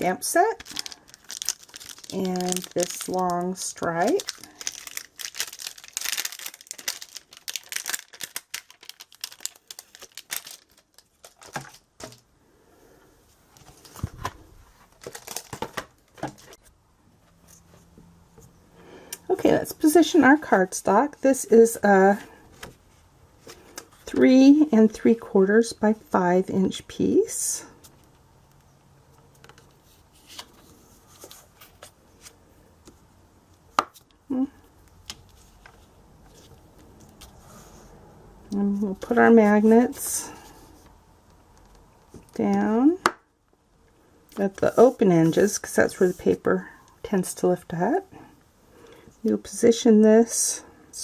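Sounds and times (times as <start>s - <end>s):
plastic packaging crinkling: 0.0s - 12.3s, 13.6s - 16.6s.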